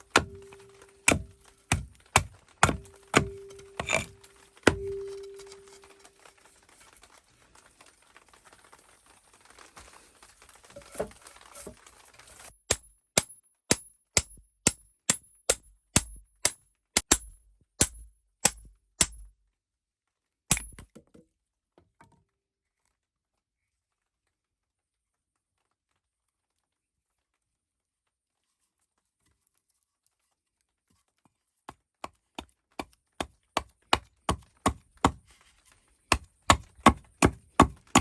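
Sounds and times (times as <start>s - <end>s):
tool striking wood: 0.0s - 5.8s, 12.7s - 19.3s, 32.8s - 35.2s, 36.1s - 38.0s.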